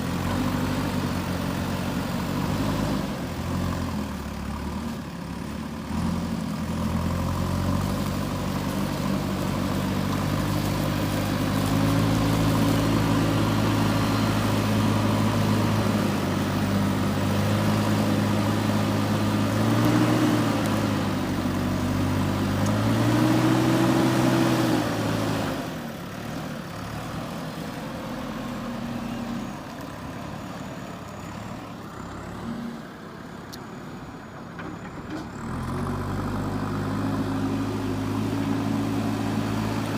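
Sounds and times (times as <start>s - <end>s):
diesel engine revving and idling: 0.0s - 39.9s.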